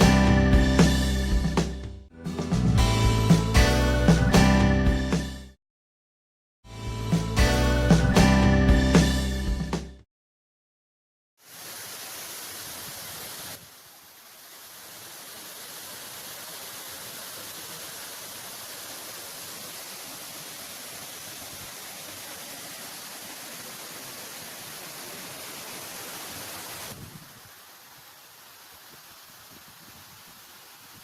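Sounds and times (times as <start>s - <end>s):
waterfall roaring: 14.6s - 27.0s.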